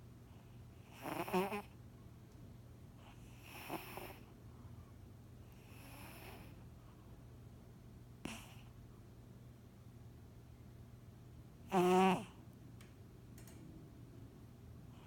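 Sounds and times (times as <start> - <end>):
cat snoring faintly: 0.8 - 1.7, 3.0 - 4.3, 5.4 - 6.6, 8.2 - 8.7, 11.7 - 12.4.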